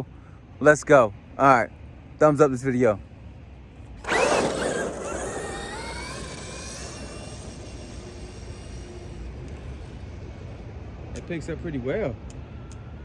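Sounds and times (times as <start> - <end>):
tyre and motor burst: 4.0 - 9.7
electric motor whine: 4.0 - 10.0.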